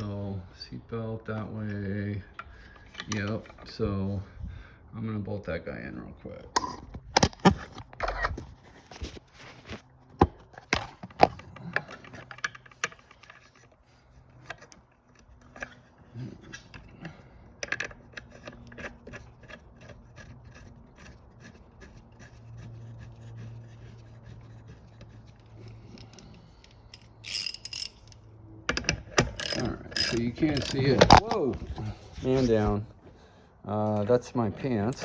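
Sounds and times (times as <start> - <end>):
bolt knocking and scraping: 23.4 - 32.8
ratchet wrench clicking: 25.6 - 31.2.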